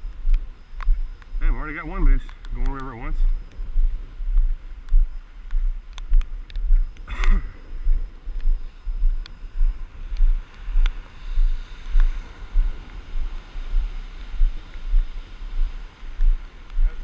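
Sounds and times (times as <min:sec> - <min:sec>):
rain ticking on microphone: 0:00.0 - 0:17.0
wind buffeting microphone: 0:00.0 - 0:17.0.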